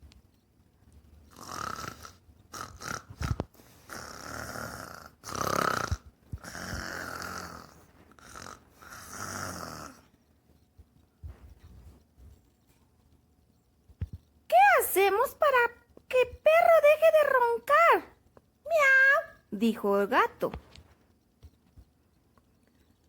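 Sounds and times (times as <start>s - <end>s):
person imitating snoring: 1.3s - 10.1s.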